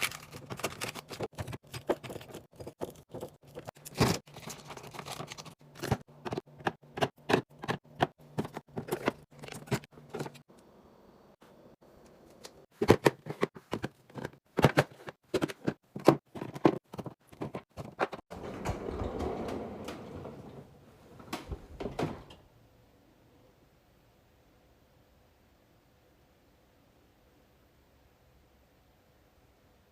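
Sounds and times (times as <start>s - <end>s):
packaging rustling: 0.0s - 6.0s
food containers clicking and tapping: 0.0s - 10.4s, 12.4s - 18.2s.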